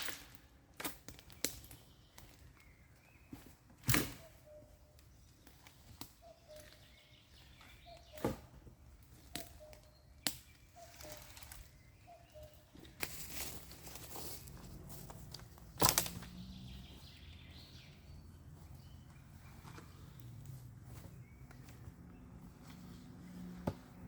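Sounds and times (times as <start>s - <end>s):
rustling: 13.0s - 16.3s.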